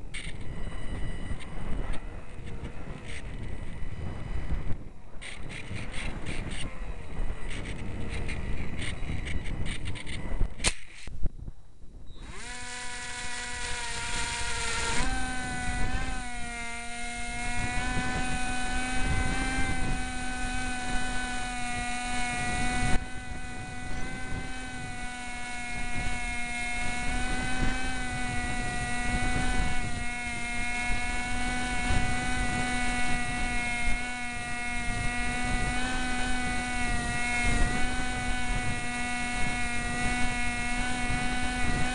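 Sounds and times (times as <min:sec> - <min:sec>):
electric motor and propeller whine: 0:00.0 - 0:41.9
wind rush: 0:13.5 - 0:41.9.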